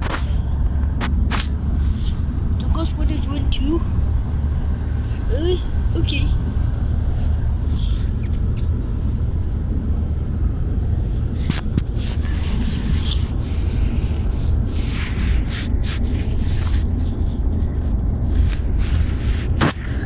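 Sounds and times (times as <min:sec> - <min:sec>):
car road noise rumble: 0:00.0 - 0:20.0
rustling: 0:11.1 - 0:20.0.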